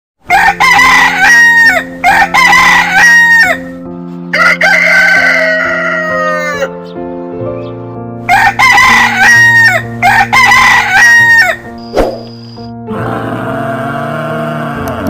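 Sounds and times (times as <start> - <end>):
rooster crowing: 0.3 - 3.7, 4.3 - 6.7, 8.3 - 11.7.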